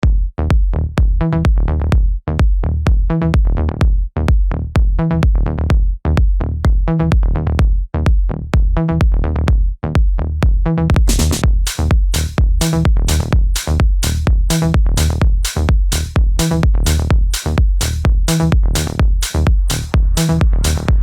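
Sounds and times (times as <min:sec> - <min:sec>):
drum machine kick: 0:00.0 - 0:21.0
electronic dance music: 0:10.9 - 0:21.0
synth stabs: 0:11.0 - 0:13.7.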